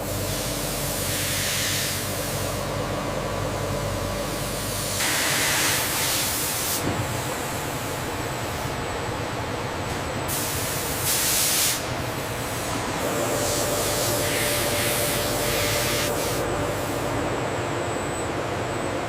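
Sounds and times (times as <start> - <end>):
hissing industrial noise: 4.0 - 19.0
faint humming tones: 11.9 - 19.0.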